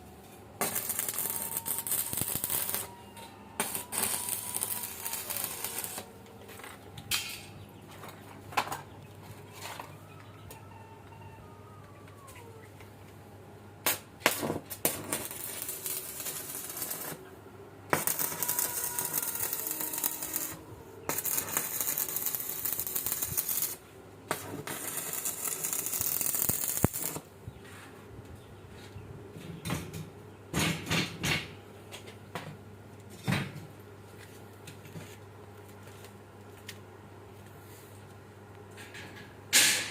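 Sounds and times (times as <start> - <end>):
welding arc crackling: 0.6 - 2.9, 3.6 - 6.2, 13.8 - 17.2, 17.9 - 27.3.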